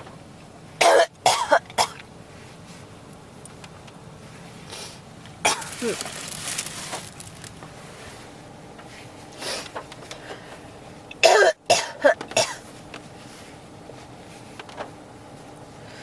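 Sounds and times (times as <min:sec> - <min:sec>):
person coughing: 0:00.8 - 0:01.9, 0:05.5 - 0:06.1, 0:11.2 - 0:12.6.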